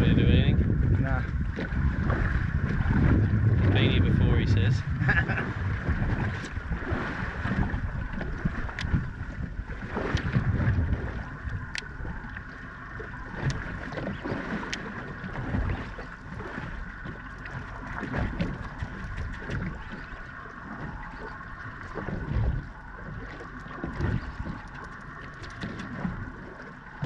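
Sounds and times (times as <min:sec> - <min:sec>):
water slapping against hull: 0:00.0 - 0:27.0
wind rumble on microphone: 0:00.0 - 0:27.0
light clicks: 0:11.7 - 0:11.9.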